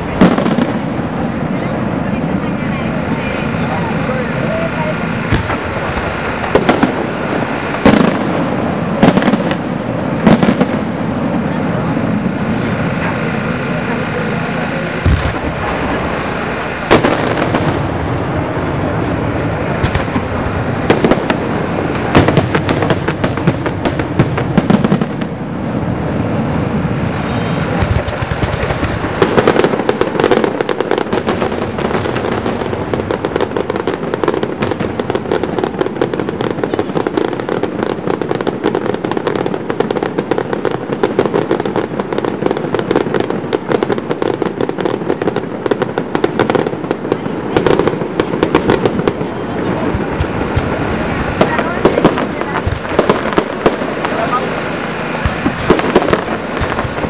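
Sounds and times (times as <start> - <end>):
firework launches: 0.0 - 57.0
firework shells bursting: 0.0 - 57.0
rapid firework crackling: 0.0 - 57.0.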